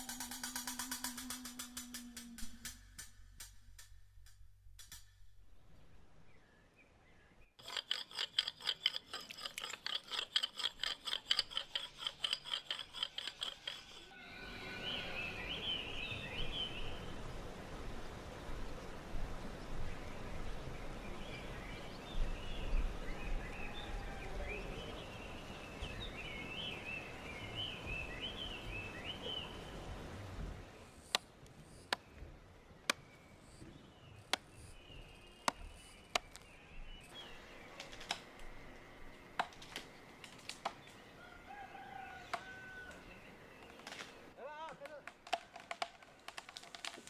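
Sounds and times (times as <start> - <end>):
outdoor background noise: 0.0 - 47.0
birds chirping and warbling: 5.8 - 17.1, 31.9 - 44.5.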